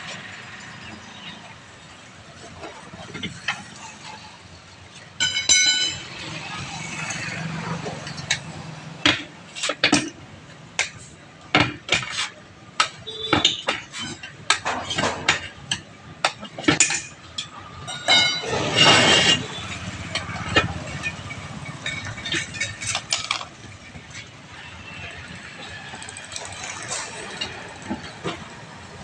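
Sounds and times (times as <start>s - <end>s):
metal tools clinking and knocking: 5.2s - 6.2s, 12.8s - 24.1s.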